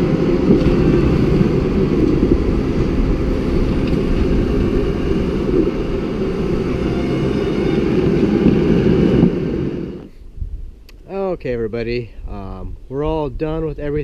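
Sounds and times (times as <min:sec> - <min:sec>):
tractor engine running: 0:00.0 - 0:10.1.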